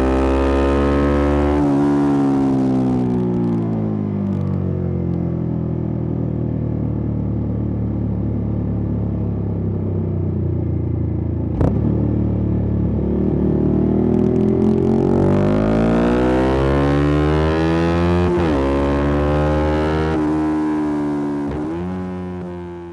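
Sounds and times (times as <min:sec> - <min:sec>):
motorcycle engine revving: 0:00.0 - 0:03.5, 0:11.6 - 0:22.9
exhaust pop: 0:21.3 - 0:22.9.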